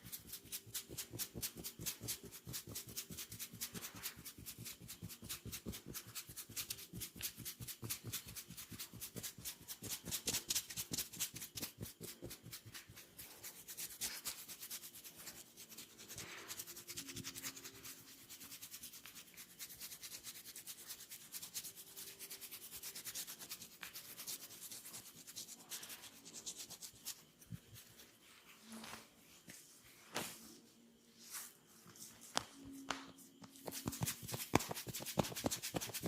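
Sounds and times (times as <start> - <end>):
hands rubbing skin: 0.1 - 36.0.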